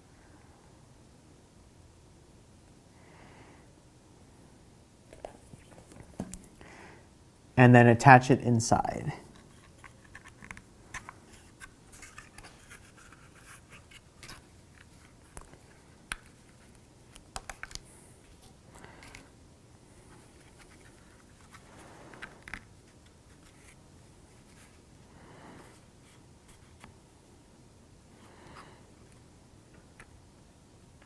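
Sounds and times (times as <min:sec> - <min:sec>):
soft scratching and rustling: 0:05.1 - 0:06.6, 0:09.2 - 0:19.3, 0:19.9 - 0:27.0.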